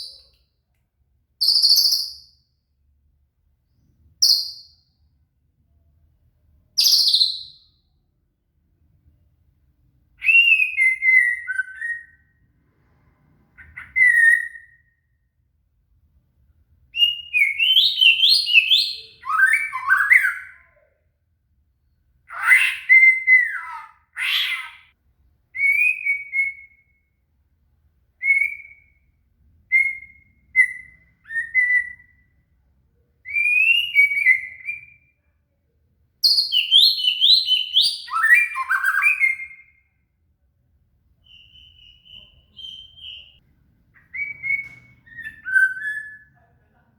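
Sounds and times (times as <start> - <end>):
bird singing whistled phrases: 1.4 - 2.3, 6.8 - 7.7, 10.2 - 12.4, 13.6 - 15.0, 17.0 - 20.8, 22.3 - 24.9, 25.6 - 27.1, 28.2 - 29.1, 29.7 - 32.4, 33.2 - 35.2, 36.2 - 39.9, 41.2 - 43.4, 44.0 - 46.4.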